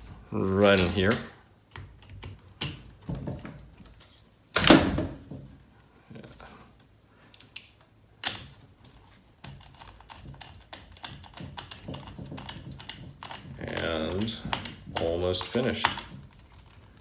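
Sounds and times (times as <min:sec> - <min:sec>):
plastic parts clicking and tapping: 0:07.3 - 0:17.0
plastic parts clattering: 0:08.9 - 0:17.0.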